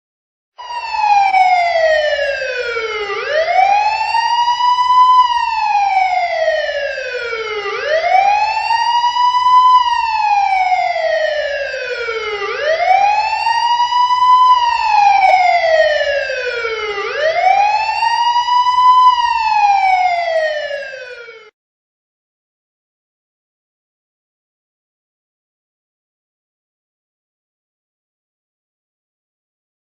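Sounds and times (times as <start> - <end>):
police siren wailing: 0.6 - 21.6.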